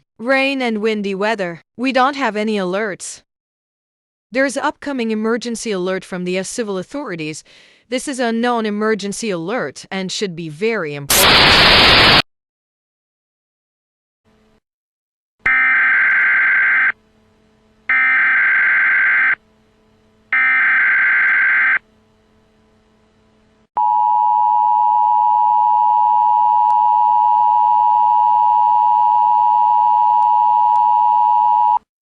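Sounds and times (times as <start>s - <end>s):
digital data screech: 11.1s - 12.2s.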